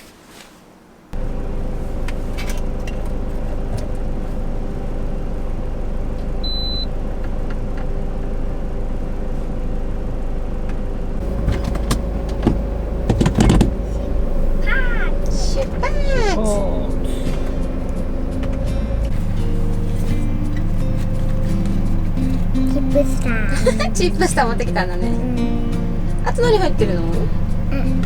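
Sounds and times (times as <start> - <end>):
van engine and road hum: 0.0 - 28.0
loud rumble: 6.9 - 28.0
knocks: 11.2 - 14.0.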